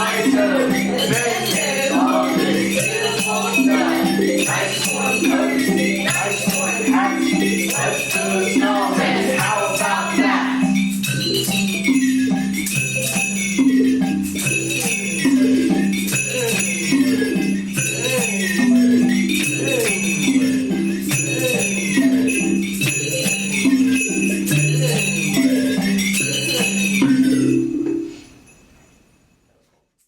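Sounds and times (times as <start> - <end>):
low pitched percussion pattern: 0.0 - 28.0
jingle bells and shakers: 0.0 - 30.0.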